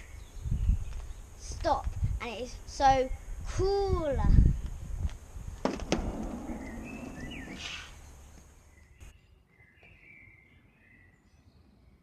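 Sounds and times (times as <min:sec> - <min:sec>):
small birds chirping: 0:00.0 - 0:03.5, 0:05.8 - 0:12.0
low noise: 0:05.2 - 0:09.1.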